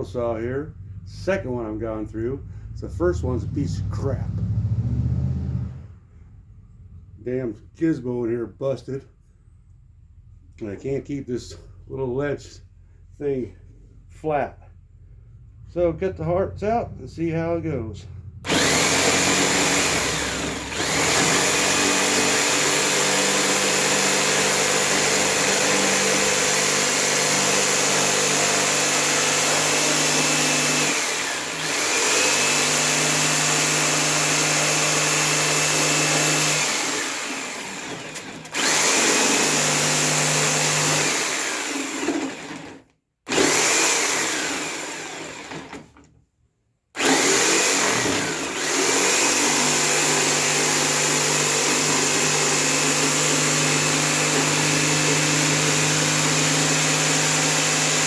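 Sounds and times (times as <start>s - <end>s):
electric saw cutting wood: 18.4s - 45.9s, 47.0s - 58.0s.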